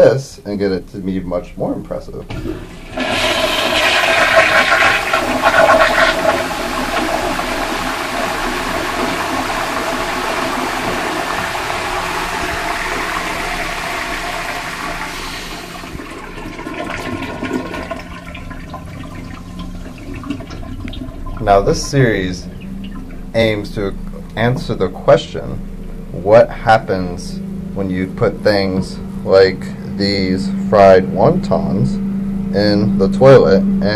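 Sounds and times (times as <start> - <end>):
toilet flushing: 2.2 - 25.5
water trickling: 5.1 - 23.6.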